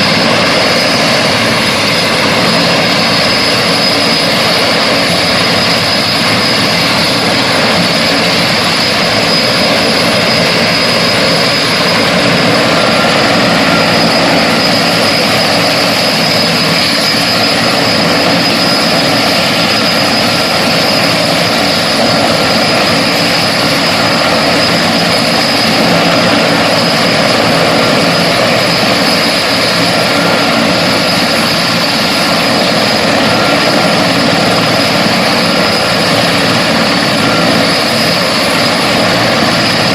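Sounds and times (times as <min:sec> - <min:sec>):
helicopter rotor noise: 0:00.0 - 0:39.9
high turbine whine: 0:00.0 - 0:39.9.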